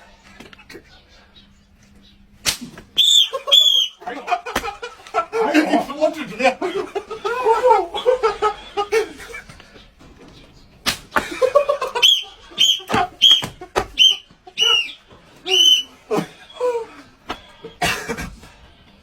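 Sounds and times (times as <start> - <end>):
voices: 0.0 - 19.0
sharp slaps: 2.4 - 3.0, 4.5 - 4.8, 10.8 - 11.4, 12.0 - 14.2
short high whistle toots: 3.0 - 4.0, 12.0 - 16.0
laughter: 3.1 - 9.8, 11.1 - 18.4.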